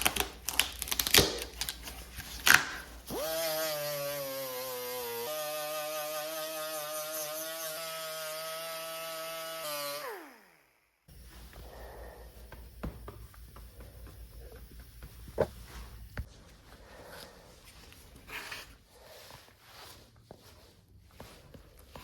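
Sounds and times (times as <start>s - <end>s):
power tool running: 3.1s - 10.8s.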